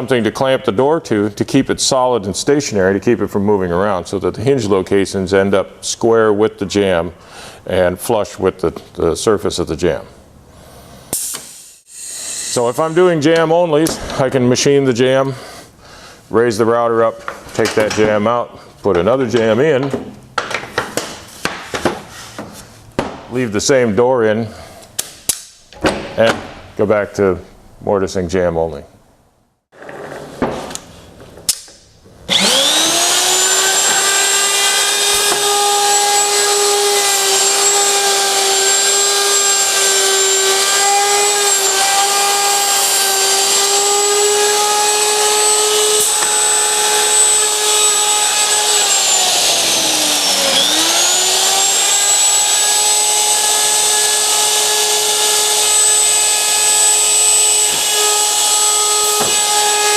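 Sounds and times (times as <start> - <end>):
router high whine: 11.6 - 14.0, 32.3 - 59.9.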